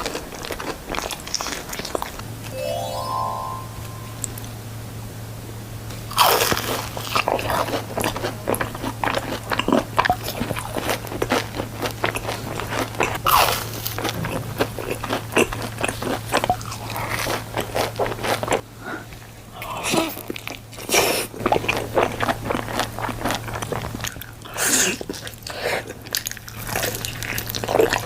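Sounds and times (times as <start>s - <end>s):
crunchy food being chewed: 0.0s - 2.4s, 6.1s - 28.0s
low hum: 2.6s - 5.5s.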